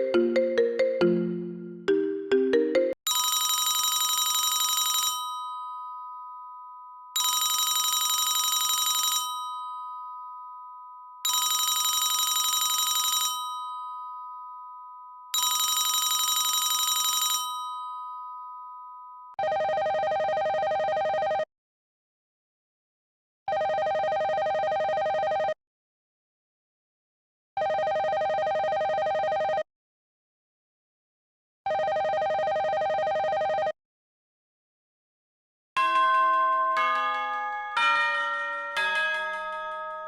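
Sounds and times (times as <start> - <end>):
marimba ringtone melody: 0.0 - 3.0
electronic phone ring: 3.1 - 6.5, 7.2 - 21.5, 23.5 - 25.6, 27.6 - 29.6, 31.7 - 33.8
old telephone bell ringing: 3.1 - 6.5, 7.2 - 14.7, 15.4 - 18.8, 35.8 - 40.0.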